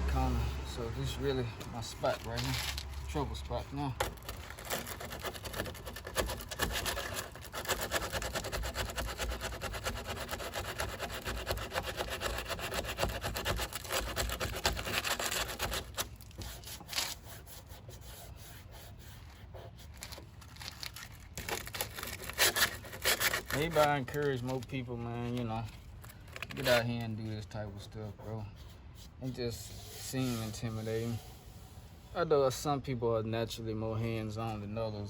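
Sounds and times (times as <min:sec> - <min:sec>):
sandpaper scraping body filler: 0:00.2 - 0:32.2.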